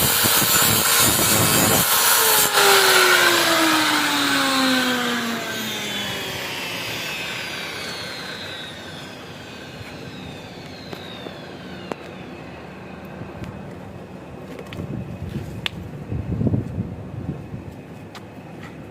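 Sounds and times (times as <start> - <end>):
electric motor whine spinning down: 0.0 - 15.5.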